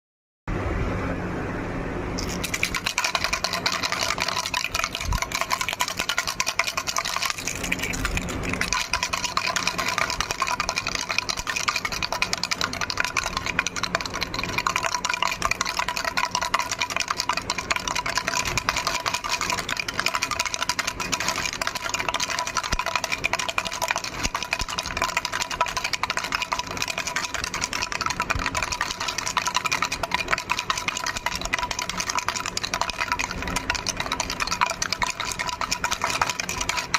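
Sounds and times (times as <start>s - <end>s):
baby rattle shaking: 2.2s - 36.9s.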